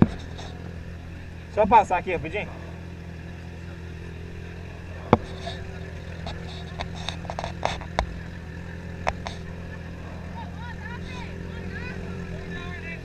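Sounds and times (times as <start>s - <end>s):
motorcycle engine idling: 0.0s - 13.0s
sharp clicks and knocks: 6.2s - 8.2s, 9.0s - 9.4s.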